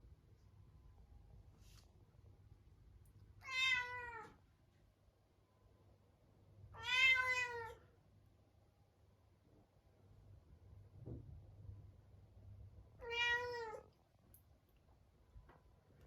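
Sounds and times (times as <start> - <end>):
cat meowing: 3.4 - 4.4, 6.8 - 7.8, 13.0 - 13.9.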